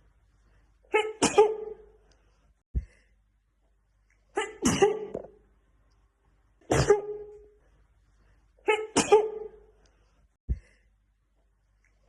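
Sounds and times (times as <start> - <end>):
woman sneezing: 0.9 - 1.9, 4.3 - 5.2, 6.6 - 7.5, 8.6 - 9.6.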